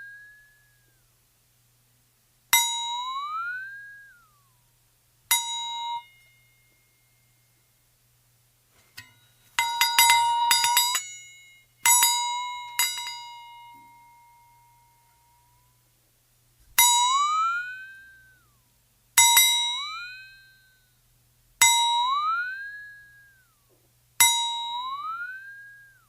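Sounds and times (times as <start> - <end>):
bell-like ding effects: 9.0 - 15.4.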